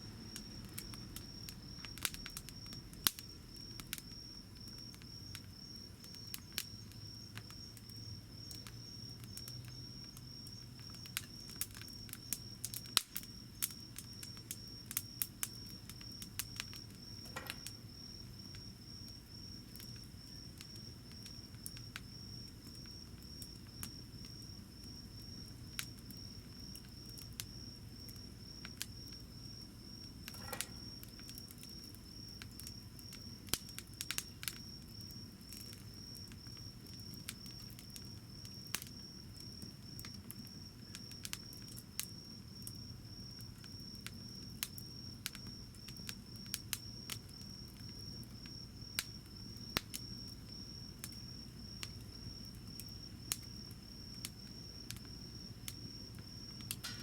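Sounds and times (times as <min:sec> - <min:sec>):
fire crackling and popping: 0:00.0 - 0:57.0.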